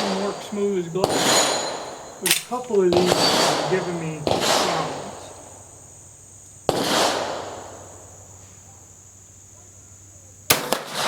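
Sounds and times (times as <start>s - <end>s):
rifle shots echoing: 0.0s - 6.0s, 6.7s - 8.4s, 10.5s - 11.0s.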